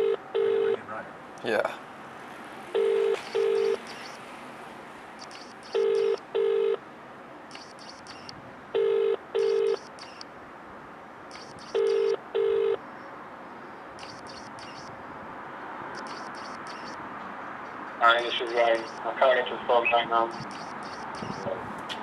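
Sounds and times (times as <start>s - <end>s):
telephone ringback tone: 0.0s - 0.8s, 2.8s - 4.2s, 5.2s - 6.8s, 7.5s - 10.2s, 11.3s - 12.8s.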